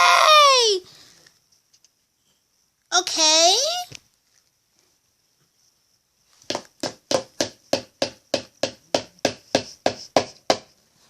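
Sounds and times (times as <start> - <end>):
sharp knocks: 6.5 - 10.7.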